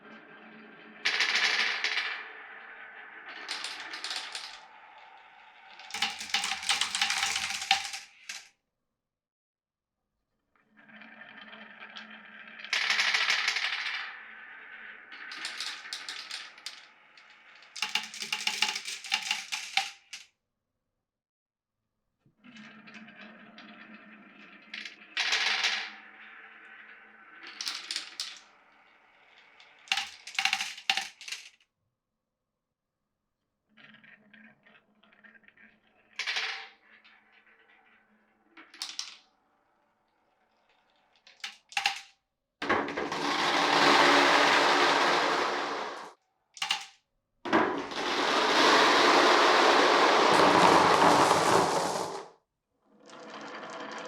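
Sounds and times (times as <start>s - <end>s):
marbles rolling on a marble run: 0.0s - 8.5s, 10.6s - 20.3s, 22.4s - 31.6s, 33.7s - 39.3s, 40.4s - 46.9s, 47.5s - 52.4s, 53.0s - 54.0s
marbles clacking on track: 1.0s - 8.4s, 12.7s - 14.1s, 15.0s - 20.2s, 27.4s - 28.5s, 29.7s - 31.6s, 41.3s - 46.9s, 47.5s - 52.3s.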